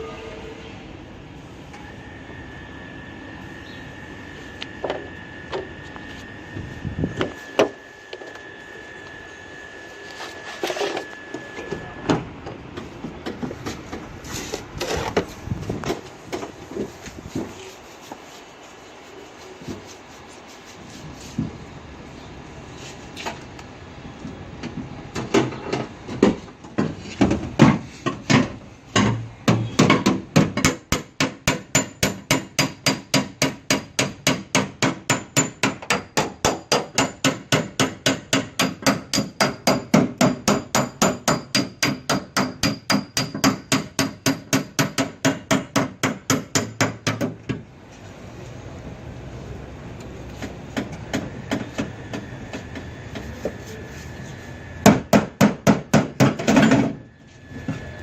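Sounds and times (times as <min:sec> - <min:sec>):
hammer beating sheet metal: 0:28.3 - 0:47.4.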